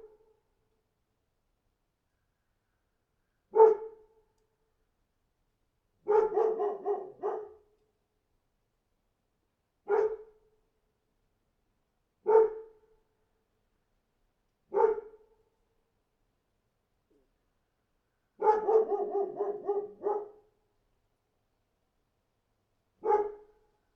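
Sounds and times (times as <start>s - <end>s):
dog barking: 3.5s - 4.0s, 6.0s - 7.6s, 9.9s - 10.3s, 12.2s - 12.8s, 14.7s - 15.2s, 18.4s - 20.4s, 23.0s - 23.5s.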